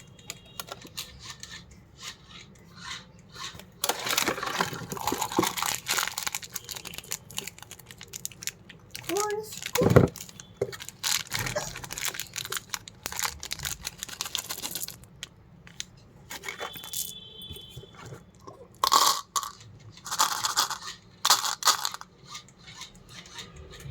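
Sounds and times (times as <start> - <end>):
plastic wrappers crinkling and tearing: 3.8 - 16.9
small hard pieces clicking: 3.8 - 17.1, 18.8 - 22.0.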